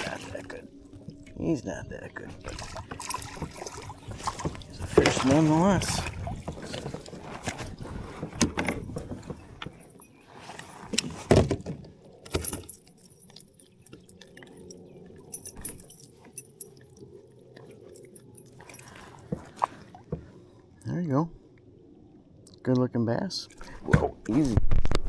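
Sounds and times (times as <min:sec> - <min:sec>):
fishing tackle jingling and clicking: 0:02.5 - 0:20.2.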